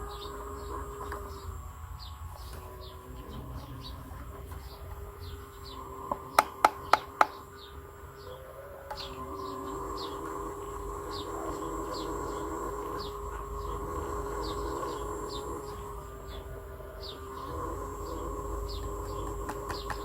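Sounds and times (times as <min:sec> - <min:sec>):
small birds chirping: 0:00.0 - 0:20.0
sharp clicks: 0:06.1 - 0:07.4.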